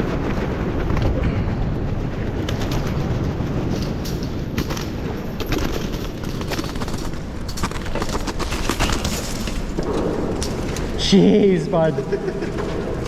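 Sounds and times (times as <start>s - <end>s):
steady low rumble: 0.0s - 8.4s, 9.6s - 13.0s
pigeons flapping wings: 1.8s - 11.0s.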